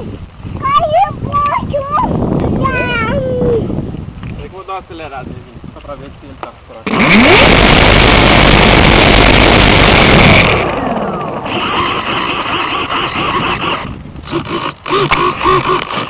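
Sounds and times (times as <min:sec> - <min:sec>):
electric motor and propeller whine: 0:06.9 - 0:16.0.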